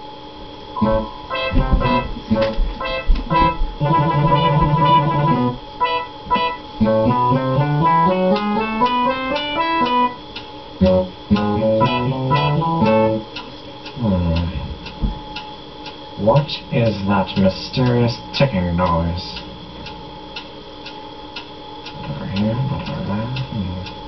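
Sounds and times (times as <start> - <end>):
plucked string and keyboard music: 0.8 - 10.2, 10.8 - 13.4.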